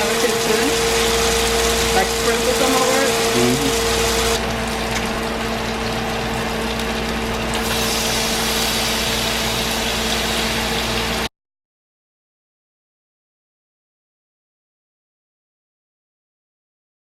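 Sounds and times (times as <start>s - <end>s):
mechanical hum: 0.0s - 11.3s.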